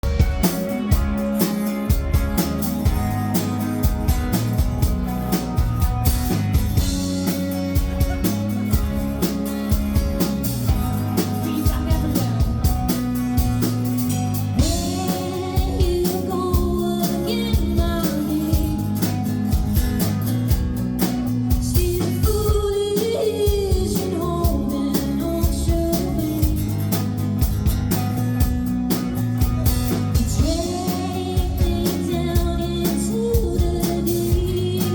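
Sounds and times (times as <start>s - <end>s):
live rock band playing: 0.0s - 34.9s
person singing: 11.1s - 12.9s, 14.6s - 19.1s, 21.6s - 26.8s, 30.2s - 34.9s.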